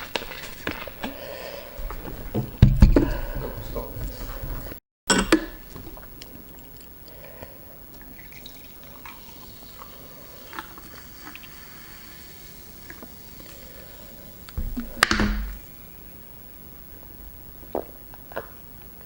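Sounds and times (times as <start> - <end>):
wet eating sounds: 5.5 - 15.1.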